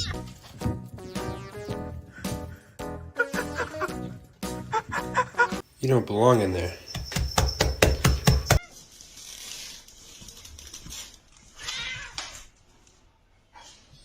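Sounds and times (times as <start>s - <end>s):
sharp clattering knocks: 6.9s - 8.6s
cat meowing: 11.6s - 12.4s.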